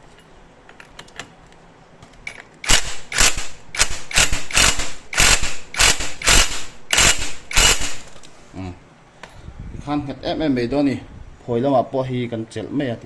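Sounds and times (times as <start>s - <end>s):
ratchet wrench clicking: 2.6s - 8.2s.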